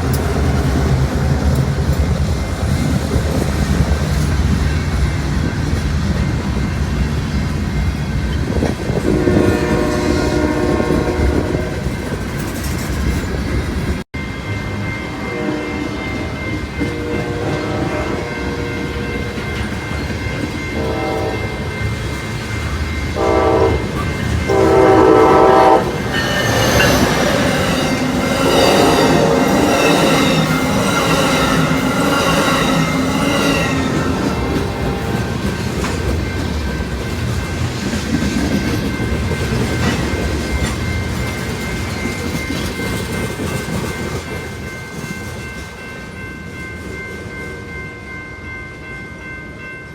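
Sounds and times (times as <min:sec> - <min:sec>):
train wheels clacking on rails: 0:00.0 - 0:14.0, 0:14.7 - 0:47.4
locomotive air horn blasts: 0:09.0 - 0:11.8, 0:15.2 - 0:19.0, 0:20.8 - 0:21.4, 0:23.2 - 0:30.8.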